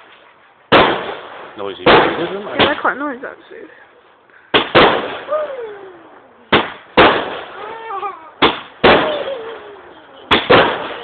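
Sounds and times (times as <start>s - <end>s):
fireworks bangs: 0.7s - 3.0s, 4.5s - 5.7s, 6.5s - 11.0s.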